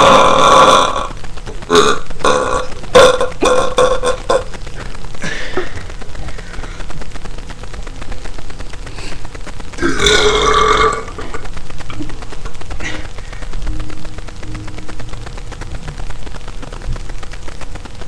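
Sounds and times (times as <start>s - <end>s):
man burping: 1.7s - 4.5s, 9.8s - 11.2s.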